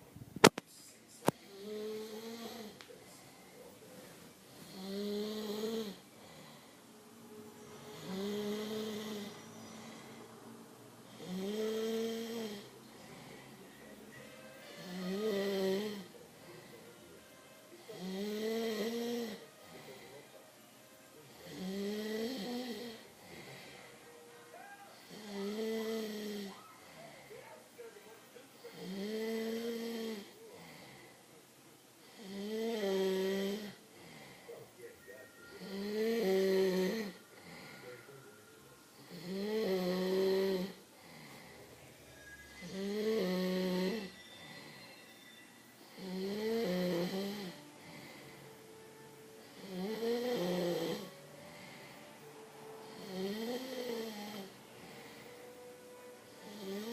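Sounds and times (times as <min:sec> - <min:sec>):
quiet breathing: 0:00.0 - 0:56.9
man snoring: 0:01.3 - 0:02.9, 0:04.5 - 0:06.7, 0:07.3 - 0:10.4, 0:11.1 - 0:13.7, 0:14.4 - 0:17.0, 0:17.8 - 0:20.3, 0:21.2 - 0:24.2, 0:25.0 - 0:27.2, 0:28.6 - 0:31.2, 0:32.0 - 0:34.6, 0:35.5 - 0:38.2, 0:39.0 - 0:41.8, 0:42.6 - 0:45.0, 0:45.8 - 0:56.9.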